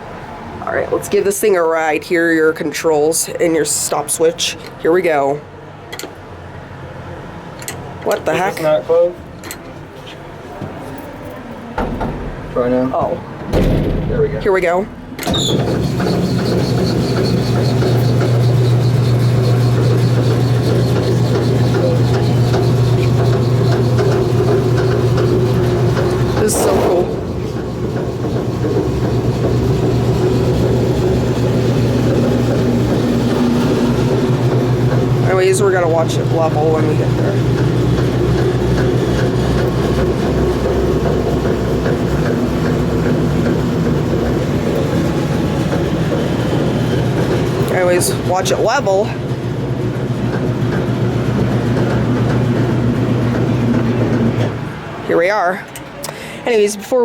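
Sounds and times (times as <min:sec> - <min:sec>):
wheelchair lift motor humming: 0:15.3 - 0:55.0.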